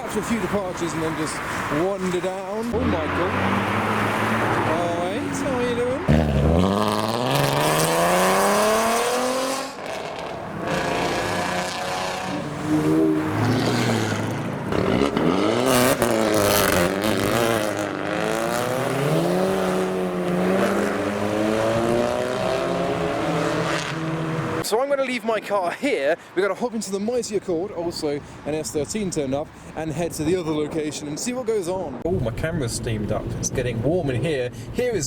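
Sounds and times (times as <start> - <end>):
car engines revving: 0.0 - 24.7.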